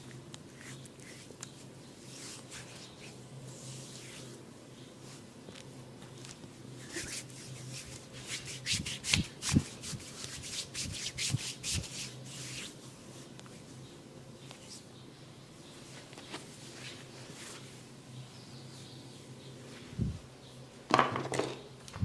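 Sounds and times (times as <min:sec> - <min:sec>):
hands rubbing skin: 0:00.4 - 0:04.4, 0:06.2 - 0:12.8.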